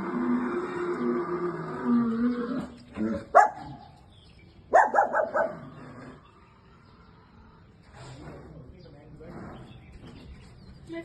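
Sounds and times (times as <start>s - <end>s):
dog barking: 3.3s - 3.8s, 4.7s - 5.6s.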